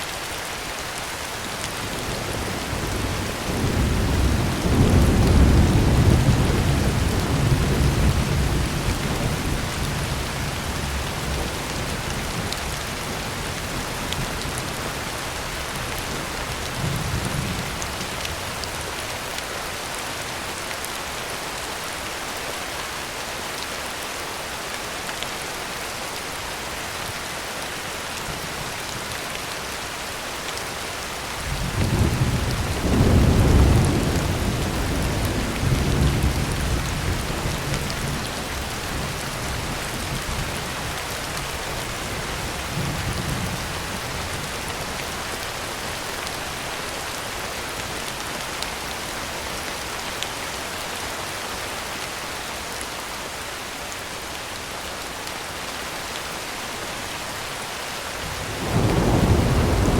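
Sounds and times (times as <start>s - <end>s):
heavy rain on a tin roof: 0.0s - 59.9s
thunder rumbling: 31.5s - 40.5s, 58.5s - 59.9s.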